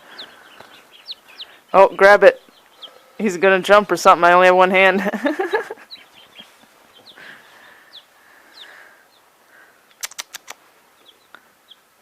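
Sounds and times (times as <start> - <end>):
chicks and ducklings peeping: 0.0 - 12.0
sharp clicks: 10.0 - 10.6.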